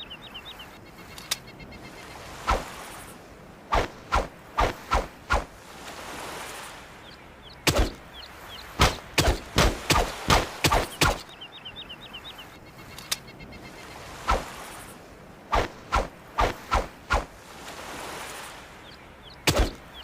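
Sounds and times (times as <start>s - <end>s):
birds chirping: 0.0s - 3.6s, 5.6s - 15.8s, 17.6s - 20.0s
machete chopping: 8.8s - 11.2s, 19.5s - 19.8s.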